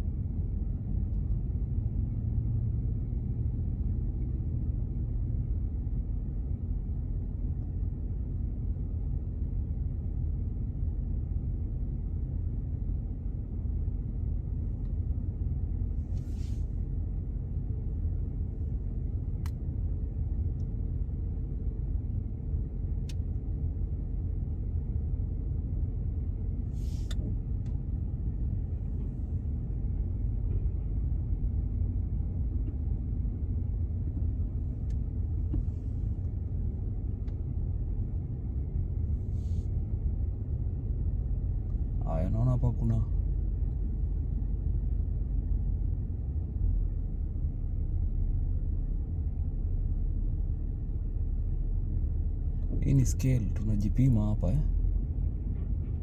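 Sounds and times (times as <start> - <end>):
car engine rumble from inside: 0.0 - 56.0.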